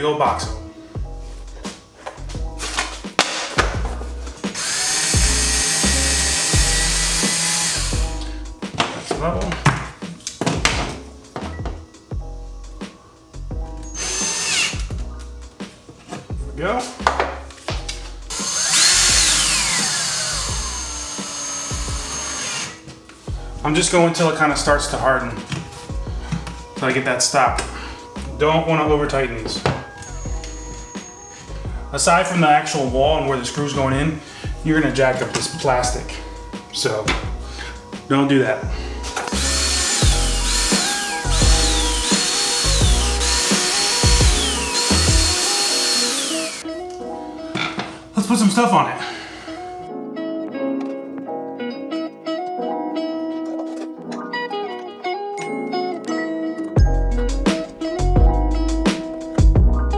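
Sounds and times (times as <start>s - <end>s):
background music: 0.0s - 59.9s
power drill driving a screw: 4.5s - 8.1s, 13.8s - 14.9s, 18.3s - 22.8s, 30.0s - 31.5s, 39.2s - 46.7s.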